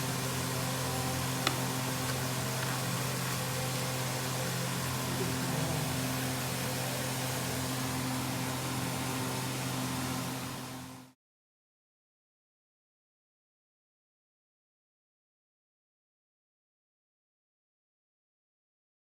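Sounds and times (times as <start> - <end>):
machine-like hum with hiss: 0.0 - 11.2.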